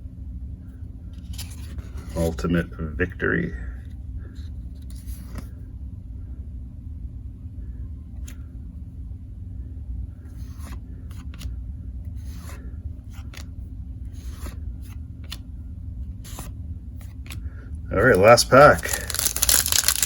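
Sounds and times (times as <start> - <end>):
steady low hum: 0.0 - 20.0
trading cards rubbing and sliding: 10.3 - 11.5, 12.1 - 13.5, 14.1 - 15.4, 16.2 - 17.4, 18.1 - 20.0.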